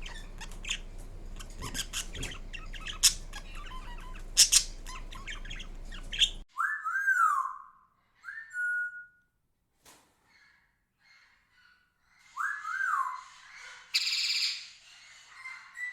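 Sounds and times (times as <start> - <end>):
parakeet squawking and chattering: 0.0 - 6.4
bird whistles: 0.0 - 7.6.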